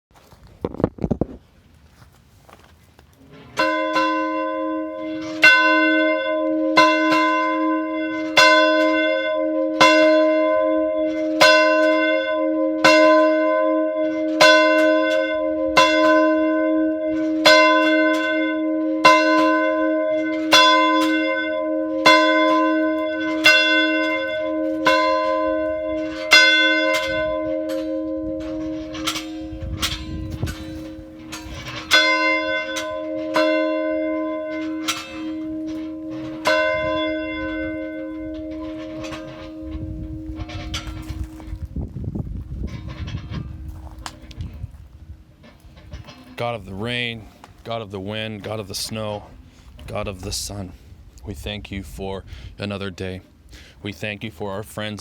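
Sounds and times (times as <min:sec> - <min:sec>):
church bell ringing: 0:03.3 - 0:41.7.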